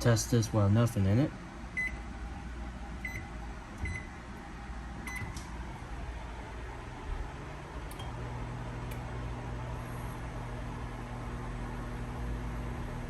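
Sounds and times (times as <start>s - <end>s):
microwave oven humming: 0.0s - 13.0s
keypad beeps: 3.0s - 4.1s, 5.1s - 5.4s.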